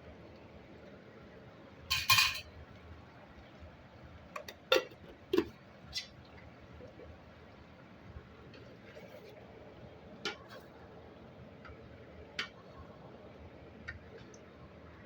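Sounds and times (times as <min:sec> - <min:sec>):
metal utensils clinking on cookware: 0:01.9 - 0:02.5.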